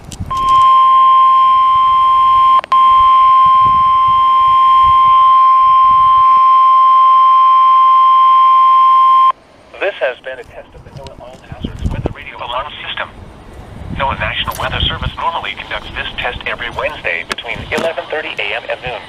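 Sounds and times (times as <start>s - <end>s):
loud steady alarm tone: 0.3s - 9.3s.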